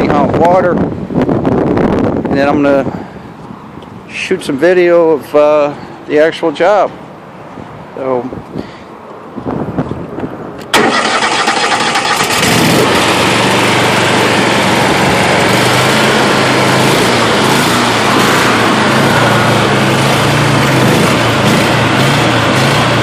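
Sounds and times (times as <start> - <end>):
pressure washer engine running: 10.8 - 23.0.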